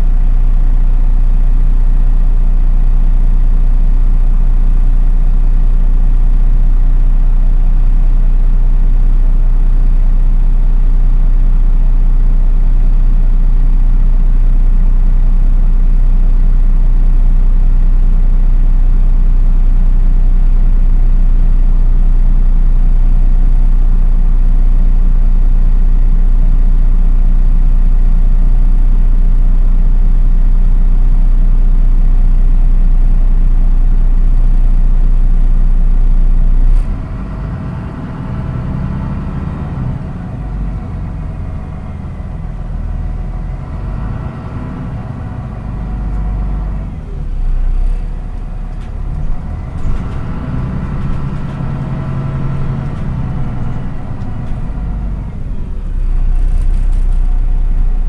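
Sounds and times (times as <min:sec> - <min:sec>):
bus engine humming: 0:39.8 - 0:58.0.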